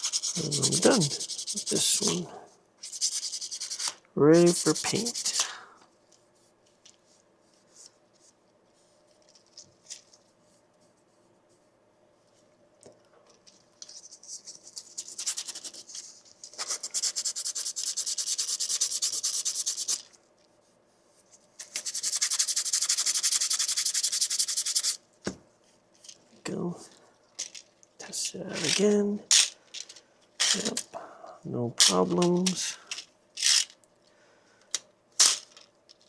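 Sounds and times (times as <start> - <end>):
sandpaper rubbing on plastic: 0.0 - 2.2, 2.8 - 5.4, 14.8 - 20.1, 21.6 - 25.0.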